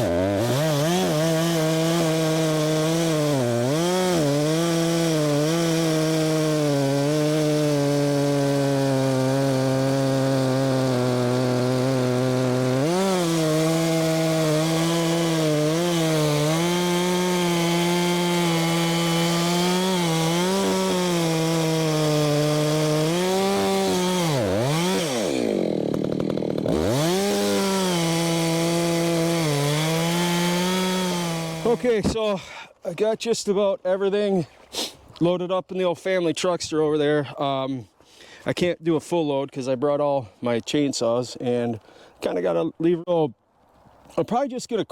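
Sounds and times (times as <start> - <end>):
chainsaw cutting wood: 0.0 - 32.2.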